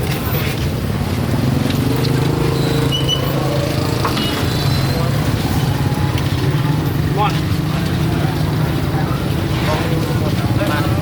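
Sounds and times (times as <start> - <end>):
engine hum: 0.0 - 11.0
faint voices: 3.2 - 11.0.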